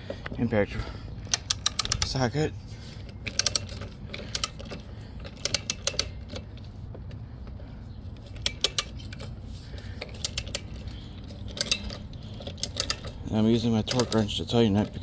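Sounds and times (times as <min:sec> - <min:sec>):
ratchet wrench clicking: 0:01.3 - 0:02.4, 0:03.1 - 0:06.7, 0:08.2 - 0:15.0.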